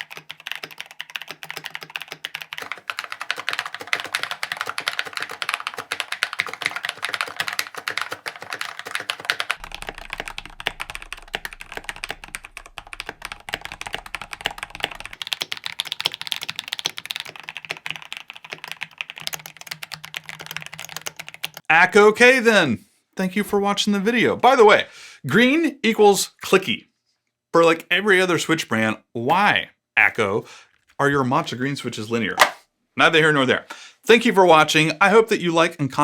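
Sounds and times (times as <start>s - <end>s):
fast mechanical keyboard typing: 0.0s - 21.7s.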